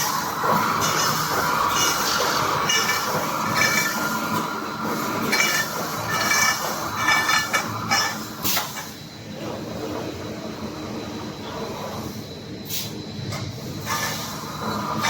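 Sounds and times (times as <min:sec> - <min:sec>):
welding machine mechanical din: 0:00.0 - 0:08.8.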